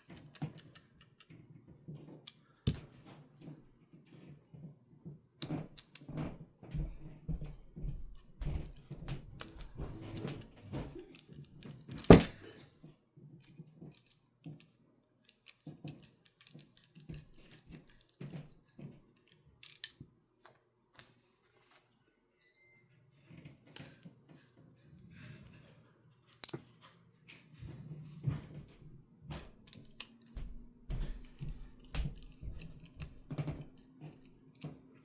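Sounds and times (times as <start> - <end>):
plastic parts clicking and rattling: 0.0 - 3.5, 5.4 - 7.1, 8.4 - 12.7, 13.4 - 21.8, 29.3 - 30.4, 31.0 - 34.9
sharp plastic snap: 12.0 - 12.5.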